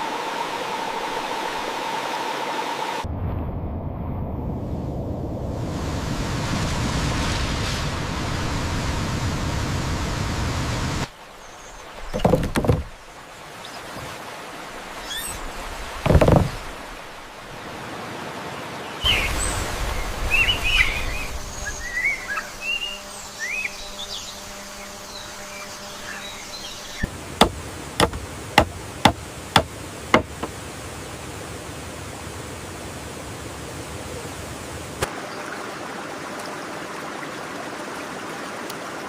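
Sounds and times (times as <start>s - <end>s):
outdoor background noise: 0.0s - 39.0s
sharp knocks: 12.1s - 12.9s, 16.0s - 16.6s, 27.0s - 30.6s
birds chirping: 18.9s - 30.6s.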